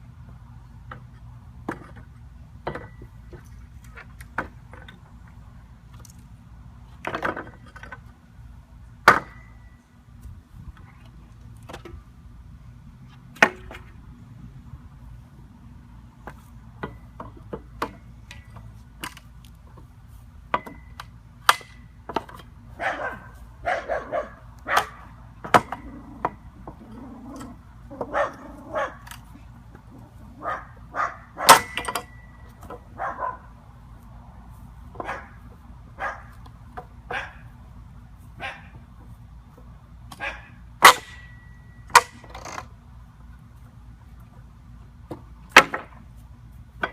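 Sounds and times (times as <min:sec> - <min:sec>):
metallic ring: 0:31.5 - 0:32.5.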